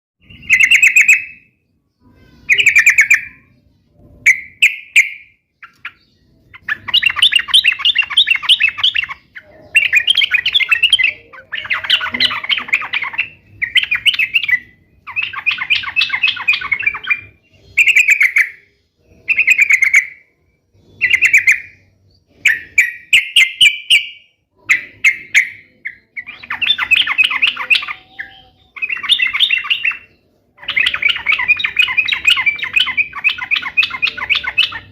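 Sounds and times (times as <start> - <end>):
bird singing chattering phrases: 0.2 - 34.9.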